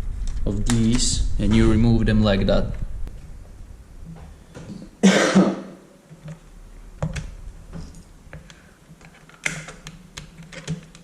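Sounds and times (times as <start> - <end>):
man clearing throat: 5.0 - 5.8.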